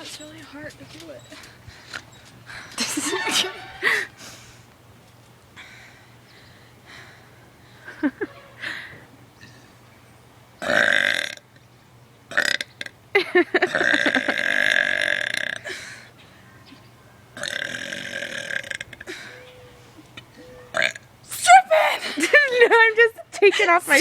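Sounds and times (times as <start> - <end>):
woman belching: 10.6 - 11.4, 13.7 - 15.8, 17.4 - 19.1, 20.7 - 21.0.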